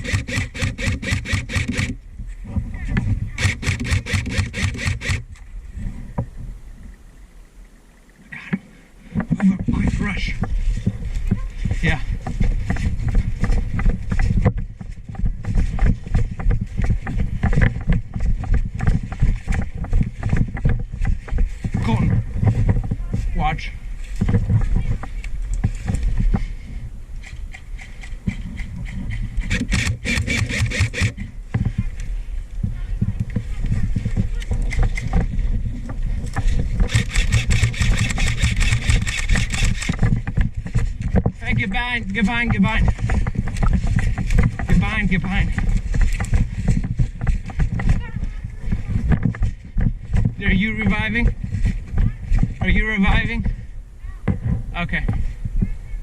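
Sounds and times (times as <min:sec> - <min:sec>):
airsoft gun full-auto burst: 0:00.0 - 0:02.0, 0:03.4 - 0:05.2, 0:29.5 - 0:31.2, 0:36.9 - 0:39.9
wind buffeting microphone: 0:00.0 - 0:07.1, 0:09.0 - 0:56.0
handling knocks and thumps: 0:08.5 - 0:23.4, 0:24.0 - 0:26.5, 0:27.2 - 0:53.6.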